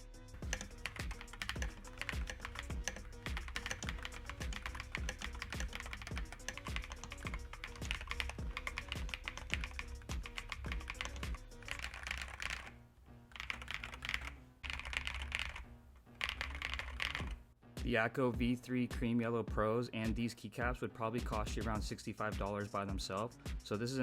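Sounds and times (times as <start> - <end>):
background music: 0.0 - 24.0
mechanical keyboard typing: 0.4 - 12.7, 13.3 - 15.6, 16.2 - 17.4.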